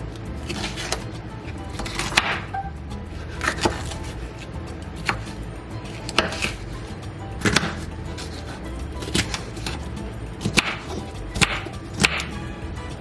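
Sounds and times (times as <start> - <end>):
background music: 0.0 - 13.0
knife chopping on cutting board: 3.2 - 4.1, 6.1 - 6.6, 10.4 - 12.4.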